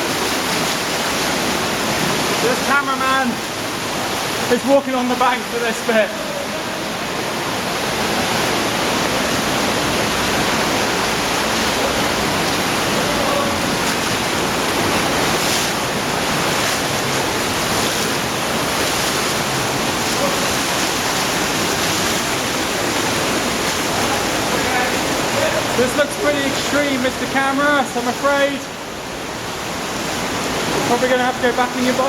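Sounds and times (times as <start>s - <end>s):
cave stream rushing: 0.0s - 32.0s.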